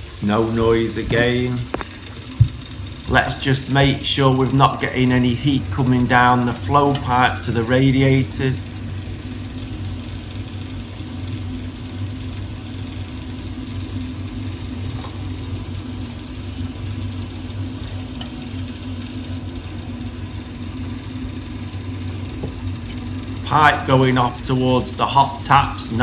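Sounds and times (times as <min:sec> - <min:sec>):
boiler humming with faint hiss: 0:00.0 - 0:26.0.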